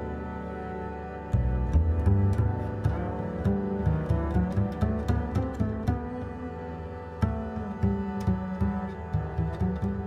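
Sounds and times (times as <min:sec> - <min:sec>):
string chords: 0:00.0 - 0:10.0
plucked bass line: 0:00.7 - 0:10.0
light ticking percussion: 0:01.4 - 0:06.6.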